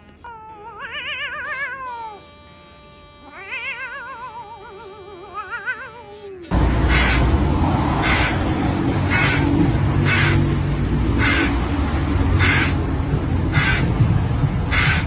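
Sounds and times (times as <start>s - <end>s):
steady low rumble: 6.5s - 15.0s
hoarse crow-like caws: 6.8s - 7.4s, 8.0s - 10.5s, 11.2s - 11.6s, 12.4s - 12.8s, 13.5s - 13.9s, 14.7s - 15.0s.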